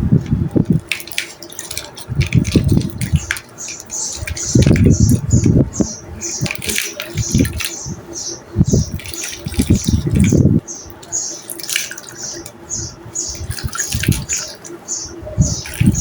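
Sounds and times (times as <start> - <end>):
wet squishes: 0.0 - 16.0.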